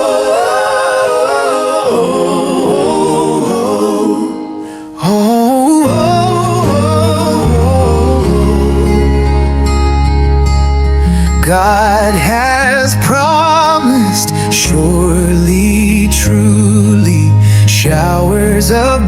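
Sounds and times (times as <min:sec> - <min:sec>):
sustained accompaniment: 0:00.0 - 0:04.9, 0:05.9 - 0:11.4
wordless sung melody: 0:00.0 - 0:19.0
bass line: 0:05.8 - 0:19.0.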